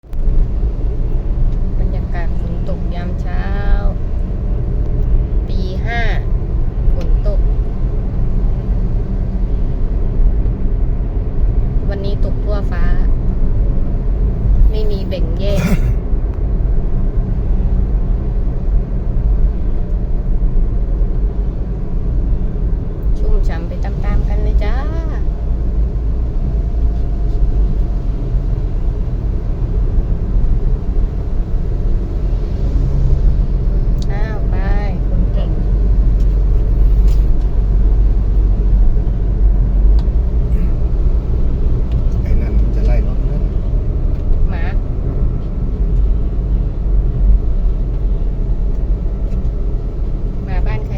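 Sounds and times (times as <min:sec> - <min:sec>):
road noise: 0:00.0 - 0:50.9
vehicle engine rumbling: 0:00.0 - 0:50.9.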